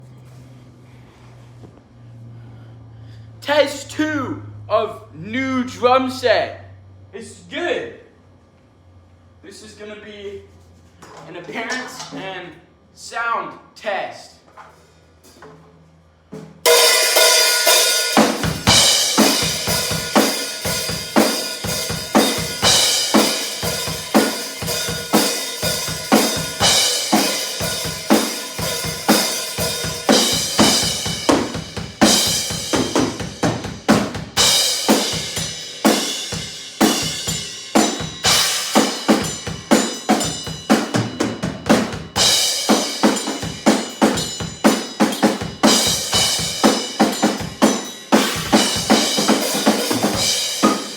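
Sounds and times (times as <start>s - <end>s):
crashing cymbals: 16.7s - 50.9s
bass drum: 25.8s - 35.6s.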